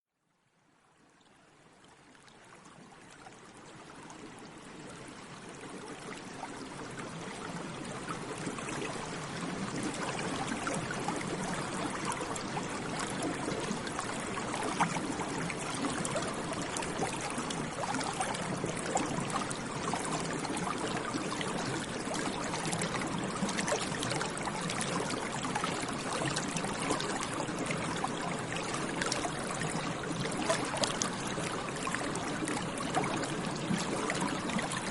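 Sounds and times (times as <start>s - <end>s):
stream flowing and splashing: 1.1s - 34.9s.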